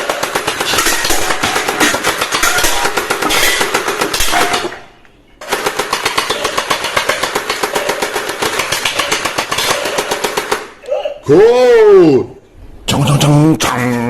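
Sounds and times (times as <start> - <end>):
toy machine gun rattle: 5.4 - 10.8.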